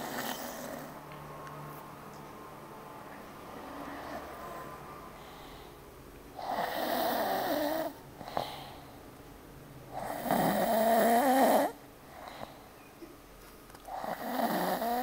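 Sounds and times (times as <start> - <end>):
man snoring: 0.0 - 0.9, 6.4 - 8.6, 9.9 - 11.8, 13.9 - 15.0.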